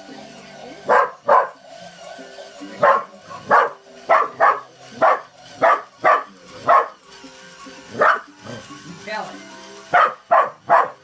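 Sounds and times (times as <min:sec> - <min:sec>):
dog barking: 0:00.9 - 0:01.6, 0:02.8 - 0:07.0, 0:08.0 - 0:08.2, 0:09.9 - 0:11.0.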